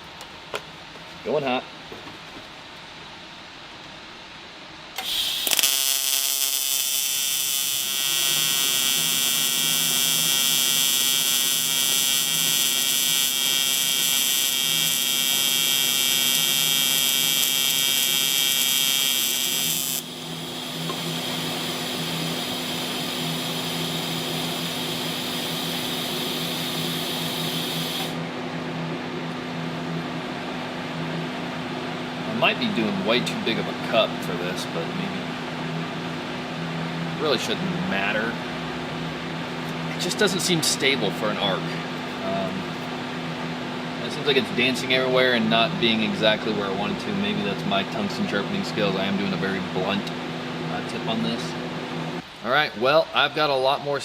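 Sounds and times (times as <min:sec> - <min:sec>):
welding arc buzzing: 0:05.0 - 0:28.3.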